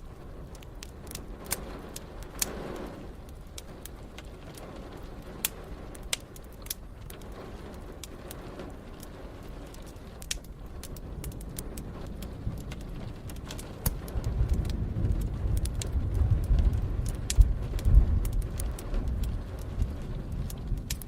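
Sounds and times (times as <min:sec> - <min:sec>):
wood fire crackling and popping: 0:00.0 - 0:21.0
thunder rolling: 0:07.2 - 0:21.0.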